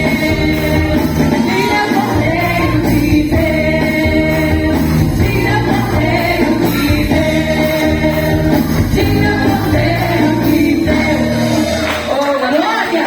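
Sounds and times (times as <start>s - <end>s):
instrumental accompaniment: 0.0s - 12.5s
women's choir singing: 0.0s - 13.0s.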